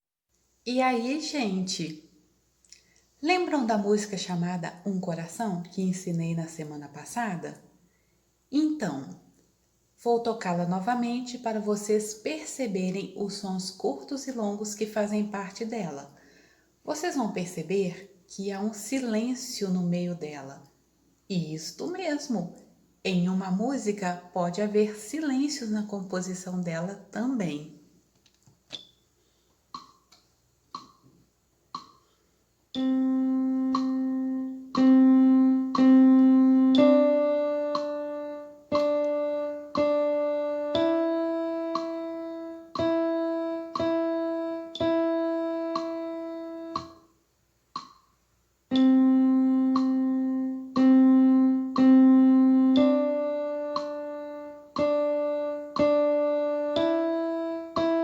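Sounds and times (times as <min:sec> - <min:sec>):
faint ticks: 0:29.7 - 0:31.1, 0:31.7 - 0:32.1, 0:33.7 - 0:34.0, 0:37.7 - 0:38.0, 0:41.7 - 0:42.0, 0:43.7 - 0:44.0, 0:45.7 - 0:46.0, 0:46.7 - 0:47.1, 0:47.7 - 0:48.1, 0:49.7 - 0:50.0, 0:51.7 - 0:52.0, 0:52.7 - 0:54.1, 0:54.7 - 0:57.1
keyboard melody: 0:32.7 - 0:47.1, 0:48.7 - 0:58.0.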